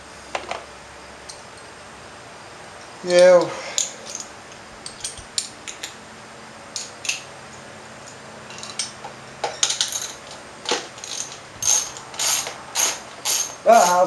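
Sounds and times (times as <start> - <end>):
metal tools clinking: 3.4 - 5.9, 8.1 - 14.0.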